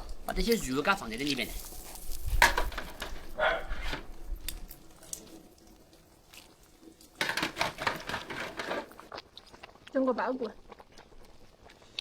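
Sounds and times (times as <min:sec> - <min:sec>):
wet squishing of raw meat: 0:04.1 - 0:07.2.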